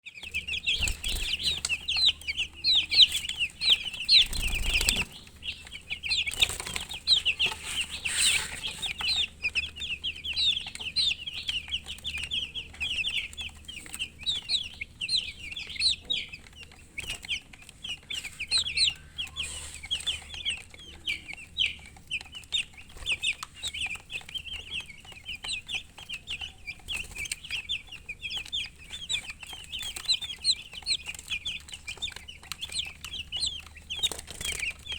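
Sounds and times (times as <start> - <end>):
chicks peeping: 0.0 - 34.9.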